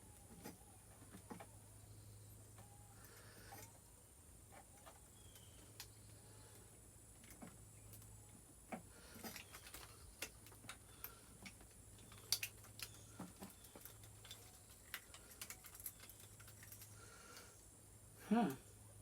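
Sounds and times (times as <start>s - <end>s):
small parts clicking and tapping: 4.5s - 17.5s.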